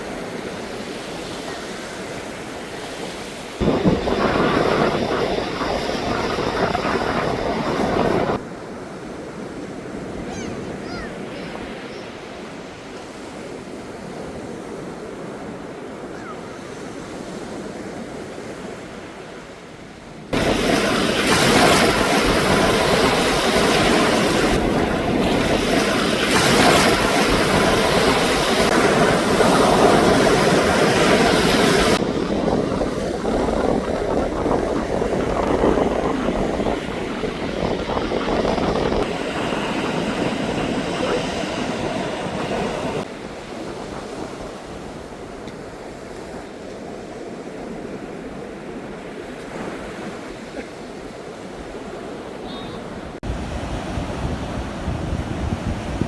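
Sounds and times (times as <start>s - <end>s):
sea waves washing onto beach: 0.0s - 56.0s.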